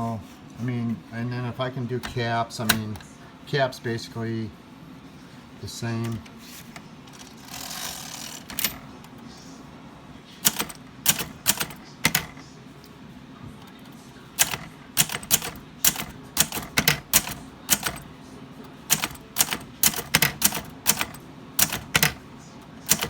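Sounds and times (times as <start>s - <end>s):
manual typewriter keys striking: 7.5s - 8.9s, 10.4s - 12.4s, 14.4s - 18.1s, 18.8s - 23.0s.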